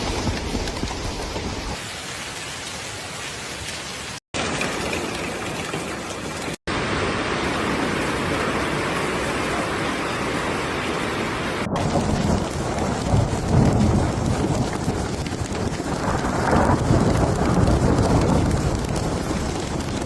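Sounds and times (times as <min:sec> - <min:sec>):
hail and heavy rain: 0:00.0 - 0:20.0
thunder rumbling: 0:04.4 - 0:20.0.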